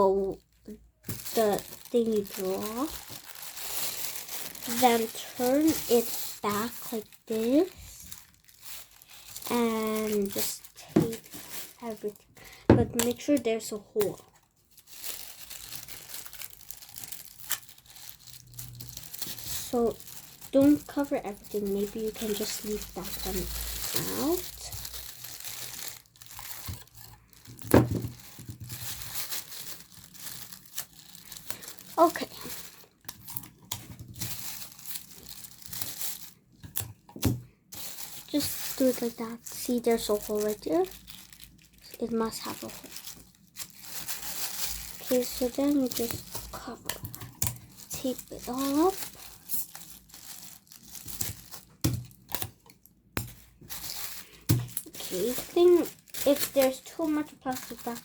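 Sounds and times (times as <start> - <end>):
plastic bag crinkling: 0.0 - 58.0.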